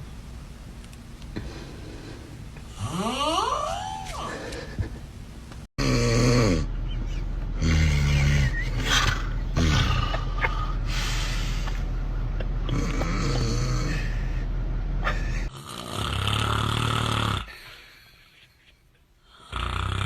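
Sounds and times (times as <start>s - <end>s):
person snoring loudly: 2.7s - 4.5s, 5.8s - 6.7s, 7.6s - 10.3s, 12.7s - 14.2s, 15.5s - 17.6s, 19.3s - 20.0s.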